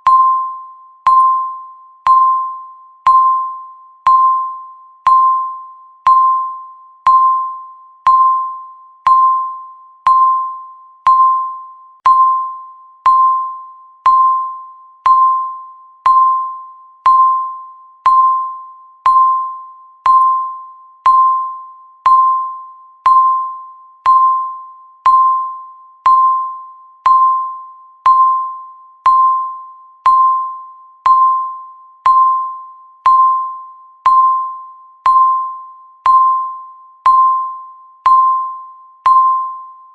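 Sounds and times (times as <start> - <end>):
electronic timer ding: 0.0 - 39.9.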